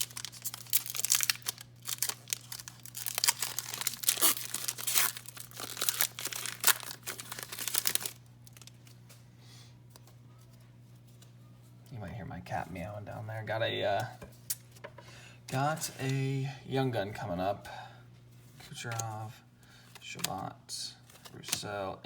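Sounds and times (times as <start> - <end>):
card pack wrapper tearing and crinkling: 0.0 - 9.0.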